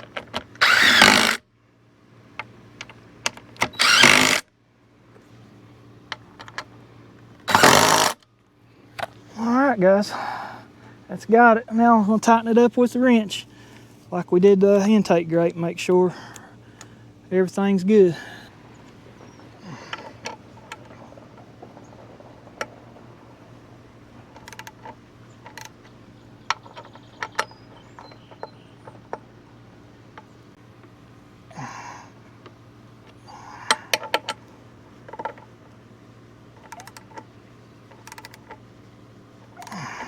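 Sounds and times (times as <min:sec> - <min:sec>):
sharp metal clicks: 0:00.0 - 0:01.4, 0:02.8 - 0:04.4, 0:07.4 - 0:08.2, 0:24.3 - 0:29.3, 0:36.6 - 0:37.3, 0:37.9 - 0:38.6
steady low hum: 0:00.0 - 0:40.0
tool clinking: 0:26.5 - 0:29.3
socket wrench ratchet clicks: 0:36.6 - 0:37.2, 0:38.0 - 0:38.6.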